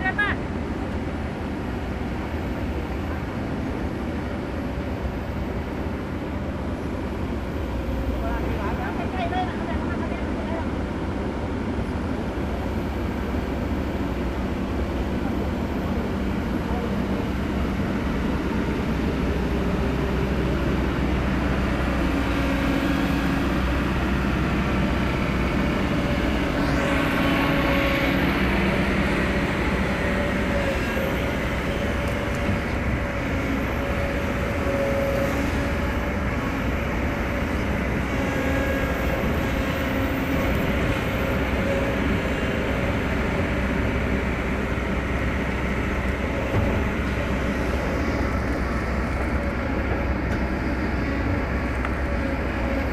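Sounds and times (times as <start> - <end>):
diesel excavator engines rumbling: 0.0 - 52.9.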